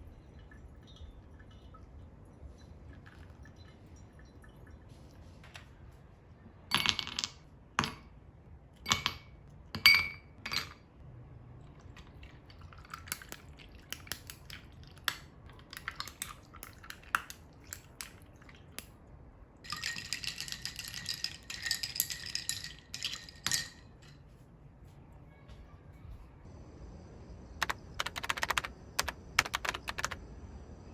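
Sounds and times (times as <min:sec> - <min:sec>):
kitchenware clinking: 0:08.9 - 0:10.8, 0:19.7 - 0:24.2
small clicks and taps: 0:27.6 - 0:30.2.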